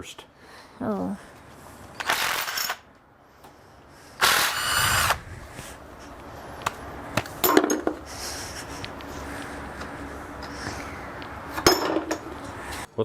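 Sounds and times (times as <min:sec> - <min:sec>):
power drill spinning: 0:02.0 - 0:02.7, 0:04.2 - 0:05.4.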